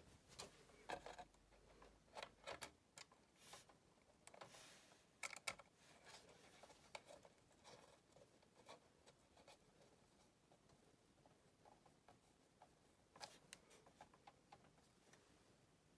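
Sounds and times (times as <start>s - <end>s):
light clicks and taps: 10.5s - 15.3s.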